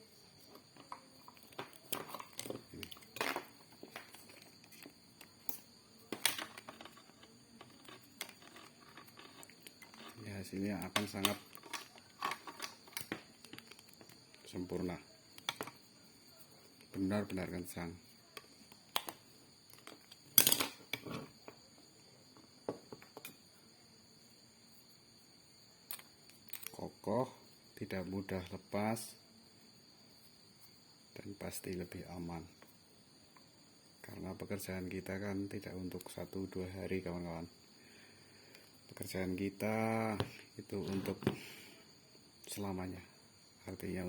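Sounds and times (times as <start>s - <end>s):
high insect trill: 0.0s - 44.0s
cable handling rustle and knocks: 0.4s - 17.7s, 18.4s - 21.8s, 40.1s - 41.5s.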